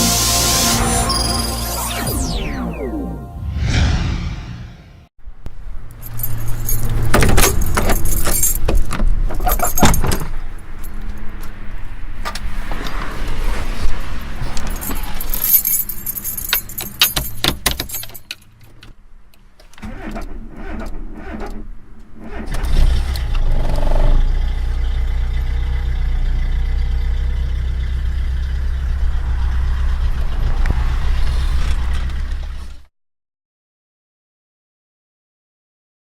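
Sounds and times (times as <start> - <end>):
car keys jangling: 6.0 - 11.3, 14.5 - 18.9.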